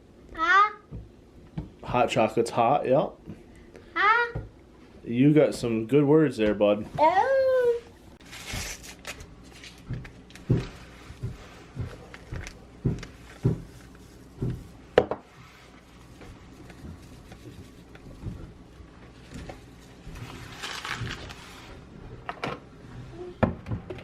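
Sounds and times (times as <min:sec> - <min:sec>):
faint handling noise: 0:08.2 - 0:21.8.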